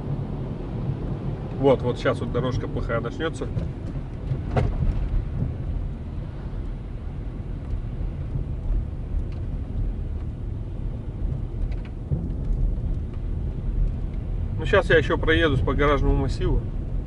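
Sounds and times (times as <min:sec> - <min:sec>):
road and tyre rumble: 0:00.0 - 0:17.0
faint suspension knocks: 0:03.4 - 0:06.0.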